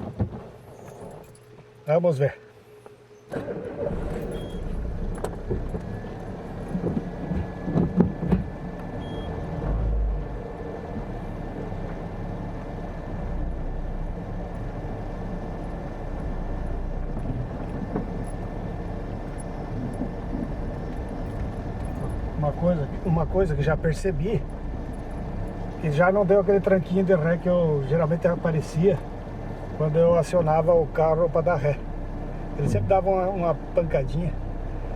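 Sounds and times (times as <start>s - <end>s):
engine knocks: 3.3s - 31.6s
car engine starting and running: 3.3s - 34.9s.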